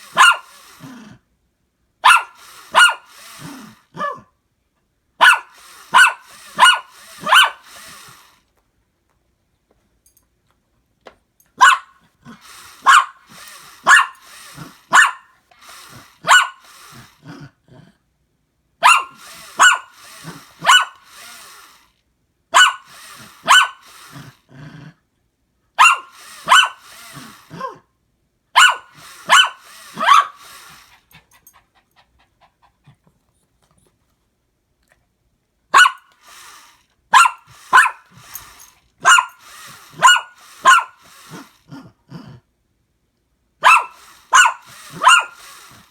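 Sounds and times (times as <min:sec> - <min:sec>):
dog barking: 0:00.1 - 0:00.5, 0:02.0 - 0:03.1, 0:04.0 - 0:04.3, 0:05.2 - 0:07.6, 0:11.6 - 0:12.0, 0:12.8 - 0:13.2, 0:13.8 - 0:14.2, 0:14.9 - 0:15.3, 0:16.2 - 0:16.6, 0:18.8 - 0:19.9, 0:20.6 - 0:21.0, 0:22.6 - 0:23.8, 0:25.8 - 0:26.8, 0:28.6 - 0:30.4, 0:35.7 - 0:36.1, 0:37.1 - 0:38.0, 0:39.0 - 0:39.4, 0:40.0 - 0:41.0, 0:43.6 - 0:45.4.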